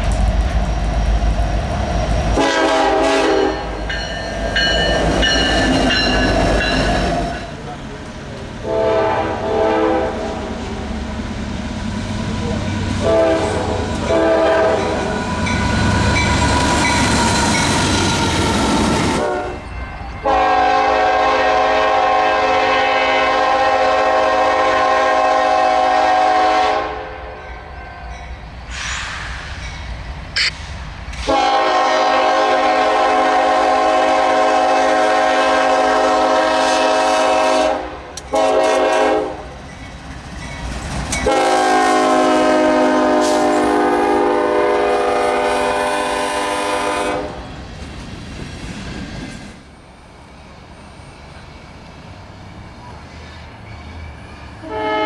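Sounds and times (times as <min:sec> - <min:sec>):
passing train rumble: 0:00.0 - 0:55.0
locomotive air horn blasts: 0:02.4 - 0:03.9, 0:08.6 - 0:10.5, 0:13.0 - 0:15.1, 0:19.1 - 0:27.2, 0:31.2 - 0:39.4, 0:41.2 - 0:47.4, 0:54.6 - 0:55.0
train wheel clatter: 0:03.4 - 0:08.7, 0:39.5 - 0:41.4.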